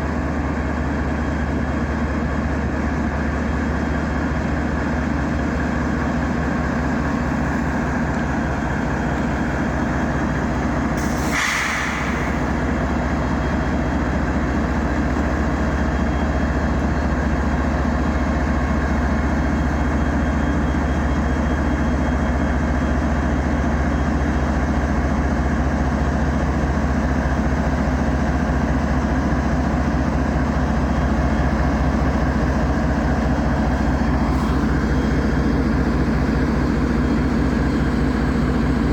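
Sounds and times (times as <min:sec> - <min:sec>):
diesel locomotive engine throbbing: 0:00.0 - 0:38.9
burst of hiss: 0:11.0 - 0:12.6.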